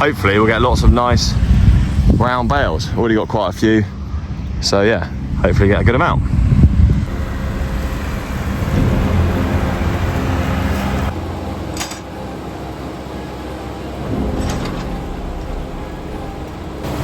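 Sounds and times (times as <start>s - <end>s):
tractor engine running: 6.6s - 17.0s.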